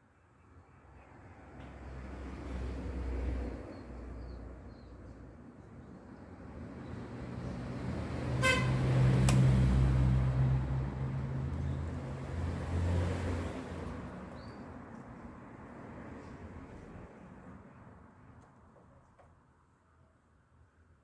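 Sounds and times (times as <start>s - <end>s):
vehicle passing by: 1.7s - 4.2s, 6.4s - 14.6s
short horn toot: 8.4s - 8.8s.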